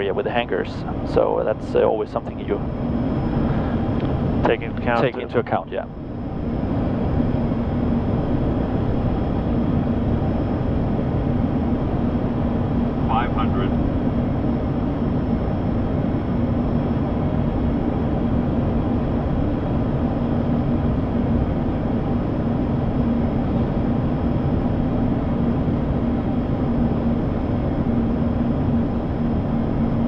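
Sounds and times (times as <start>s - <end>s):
constant low hum tone: 0.0s - 30.0s
turboprop engines droning: 0.0s - 30.0s
airflow noise: 2.6s - 5.5s.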